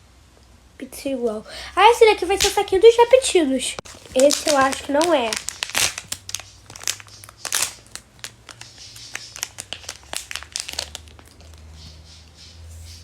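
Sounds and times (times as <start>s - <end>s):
plastic wrapper crinkling: 1.9s - 11.8s.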